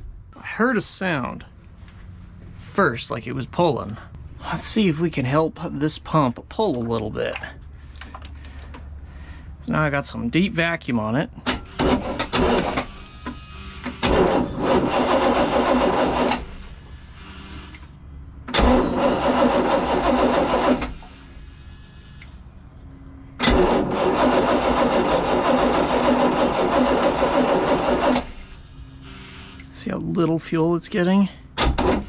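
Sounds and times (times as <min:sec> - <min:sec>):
engine cranking on starter: 0:11.5 - 0:13.2, 0:13.8 - 0:16.8, 0:17.7 - 0:21.3, 0:23.4 - 0:28.6, 0:31.6 - 0:32.0.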